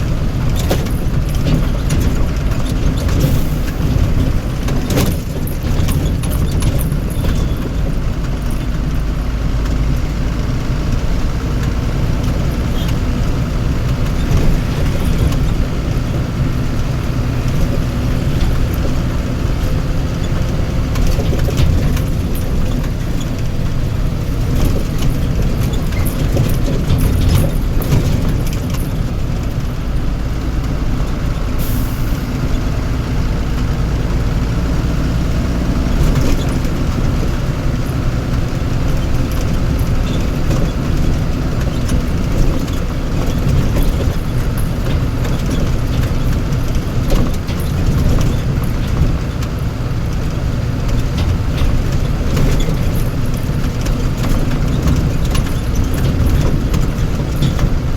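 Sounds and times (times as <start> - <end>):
rattles: 0.0 - 10.0, 11.7 - 31.9, 35.4 - 57.9
road rumble: 0.0 - 57.9
vehicle engine running: 0.0 - 57.9
short hiss: 31.6 - 32.3.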